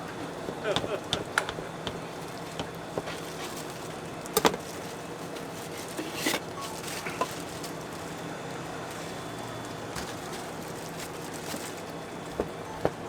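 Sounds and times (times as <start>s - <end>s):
kitchen utensils clicking and knocking: 0.4s - 3.8s.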